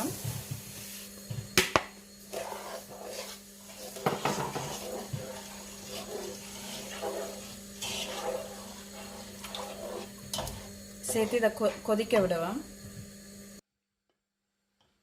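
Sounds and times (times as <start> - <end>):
steady low hum: 0.0 - 13.6
scraping and rustling: 2.3 - 11.9
spoon knocking against a pan: 4.0 - 4.7.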